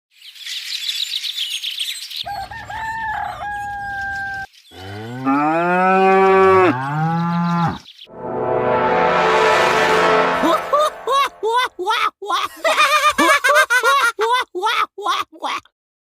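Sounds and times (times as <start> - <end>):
birds chirping: 4.2 - 8.1
cow mooing: 4.8 - 7.8
rush of sound: 8.1 - 11.5.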